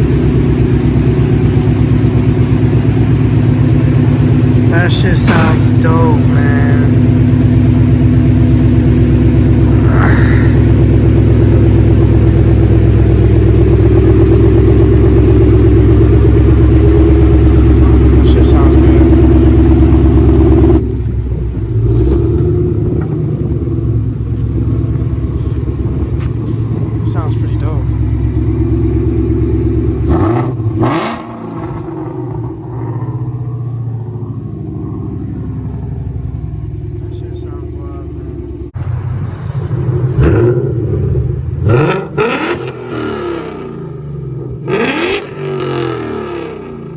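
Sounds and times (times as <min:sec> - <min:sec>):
loud car exhaust note: 0:00.0 - 0:46.9
harsh exhaust bursts: 0:02.5 - 0:08.3, 0:09.2 - 0:20.9.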